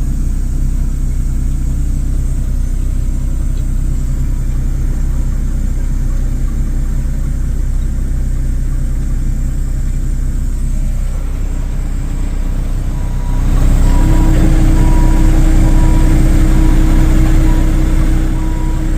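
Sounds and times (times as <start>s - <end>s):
heavy vehicle engine running: 0.0s - 18.9s
reversing alarm beeping: 10.2s - 18.9s.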